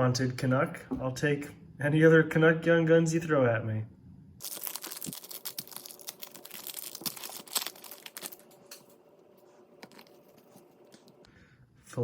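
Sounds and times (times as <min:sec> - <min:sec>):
foil wrapper tearing and crinkling: 0:04.4 - 0:08.6.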